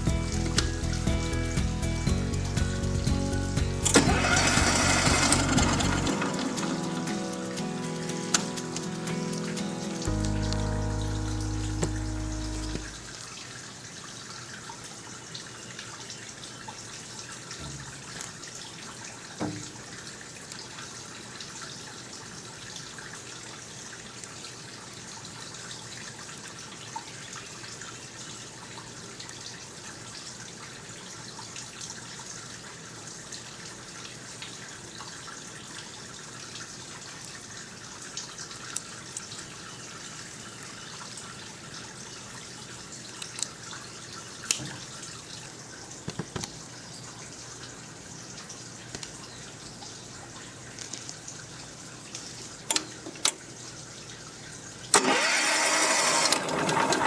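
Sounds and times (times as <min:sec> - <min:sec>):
running water hiss: 0:00.0 - 0:57.0
small clicks and drips: 0:12.6 - 0:56.9.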